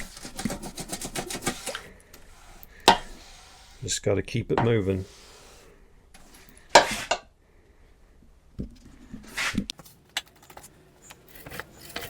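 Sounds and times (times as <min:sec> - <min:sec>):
roller scraping wax: 0:00.0 - 0:07.2.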